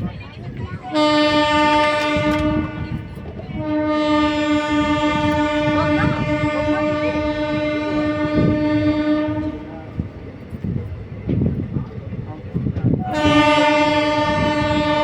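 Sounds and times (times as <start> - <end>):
low rumble of train: 0.0 - 15.0
train horn blast: 0.8 - 9.8, 13.0 - 15.0.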